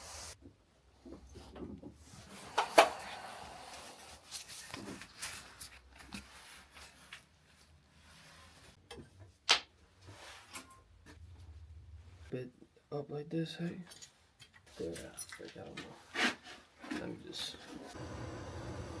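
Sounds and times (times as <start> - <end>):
rustling: 3.7 - 8.8.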